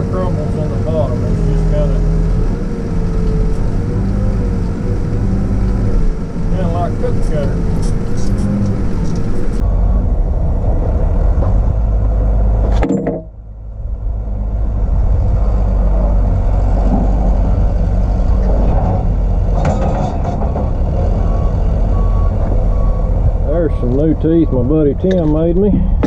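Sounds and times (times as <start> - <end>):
backhoe diesel engine running: 0.0 - 26.0
reversing alarm beeping: 21.2 - 26.0.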